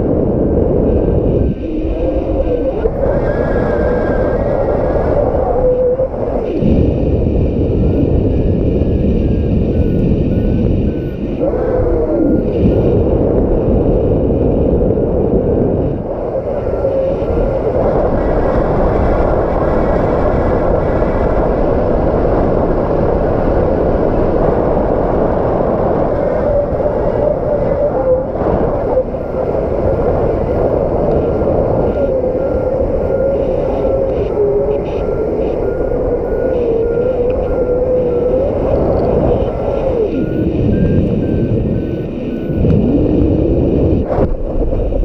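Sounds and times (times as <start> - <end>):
strong wind on microphone: 0.0 - 45.0
faint wavering whistle: 26.4 - 43.0.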